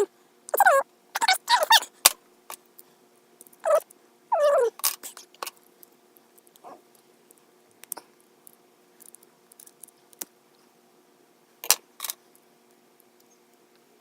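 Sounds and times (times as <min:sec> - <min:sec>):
pet whining cries: 0:00.0 - 0:01.9, 0:03.6 - 0:04.8.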